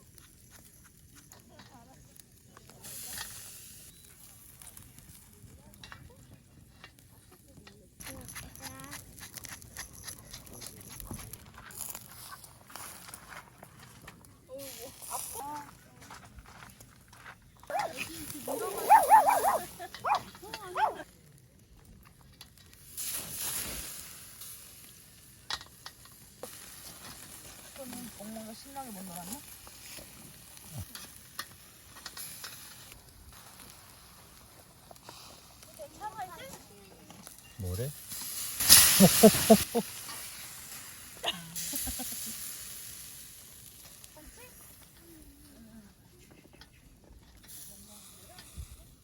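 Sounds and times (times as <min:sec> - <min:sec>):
meat sizzling on a grill: 0:00.0 - 0:06.0, 0:11.7 - 0:13.4, 0:14.5 - 0:15.8, 0:22.4 - 0:45.8, 0:47.3 - 0:49.0
dog whining: 0:17.7 - 0:21.0
dog yipping: 0:17.7 - 0:21.0
hissing noise burst: 0:38.4 - 0:39.9.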